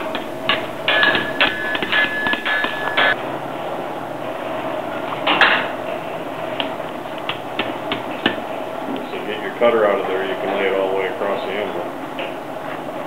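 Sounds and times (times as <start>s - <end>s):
steady hum: 0.0s - 5.0s.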